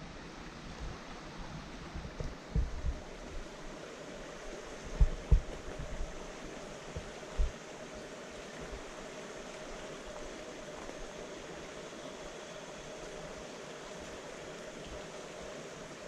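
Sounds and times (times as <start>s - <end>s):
creek water rushing: 0.0s - 16.0s
short low thumps: 2.0s - 3.0s, 4.9s - 6.1s.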